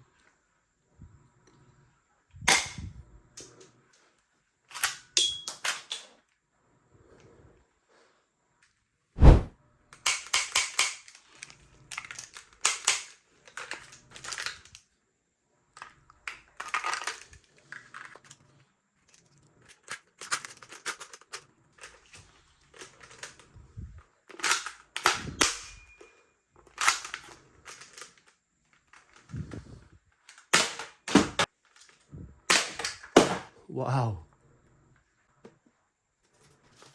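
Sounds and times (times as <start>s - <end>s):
toy gun clicks and snaps: 2.5s - 3.6s, 4.7s - 6.1s, 10.0s - 14.8s, 24.3s - 25.8s, 26.7s - 29.2s, 30.3s - 31.2s, 32.5s - 33.4s.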